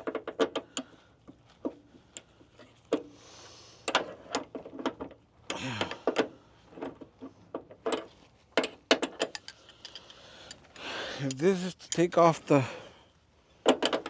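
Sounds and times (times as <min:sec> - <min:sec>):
hand tools clicking and knocking: 0:07.8 - 0:12.6.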